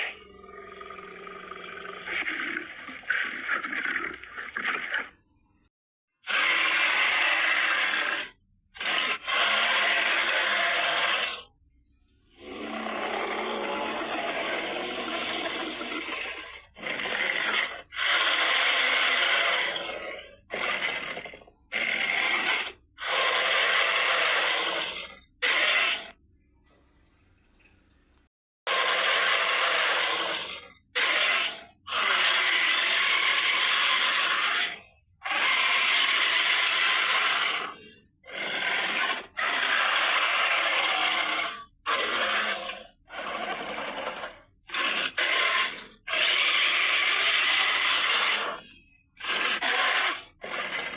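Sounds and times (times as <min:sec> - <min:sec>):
raspy hissing creature bursts: 0:06.3 - 0:11.4, 0:12.4 - 0:26.1, 0:28.7 - 0:50.9.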